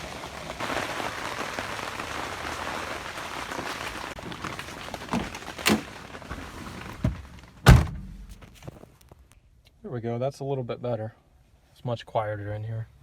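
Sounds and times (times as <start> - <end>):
rain on fabric shelter: 0.0 - 9.4
car door shutting: 7.0 - 8.6.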